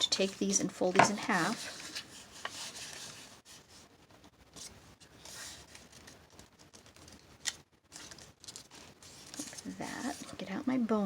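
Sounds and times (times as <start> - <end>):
paper rustling: 0.0 - 3.9, 4.5 - 10.5
crisp paper fold clicks: 4.6 - 9.7.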